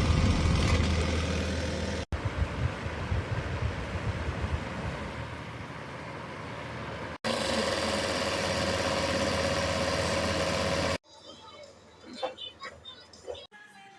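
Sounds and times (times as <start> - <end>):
fan heater whirring: 0.0 - 11.0.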